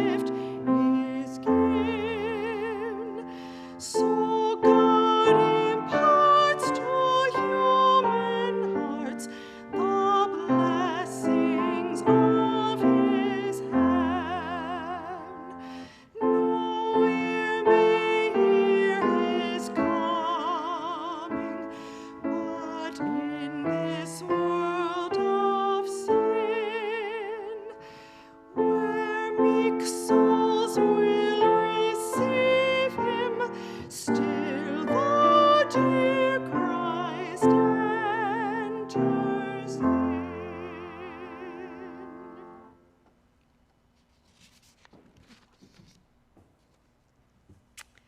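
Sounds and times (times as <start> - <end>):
person singing a hymn: 0.0 - 42.8
keyboard accompaniment: 28.4 - 43.0.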